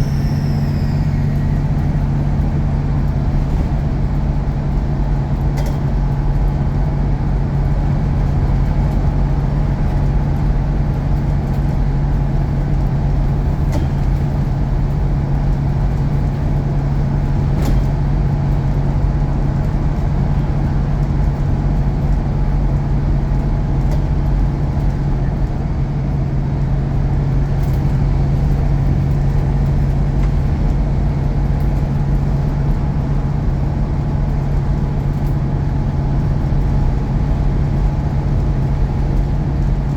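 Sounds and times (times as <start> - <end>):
faint steady whine: 0.0 - 3.3
bus engine running: 0.0 - 39.9.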